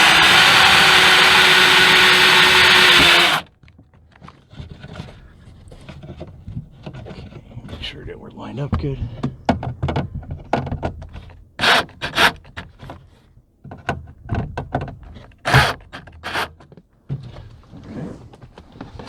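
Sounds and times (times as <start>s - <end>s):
plastic rasps: 0.0s - 3.6s, 10.6s - 13.0s, 15.1s - 16.8s.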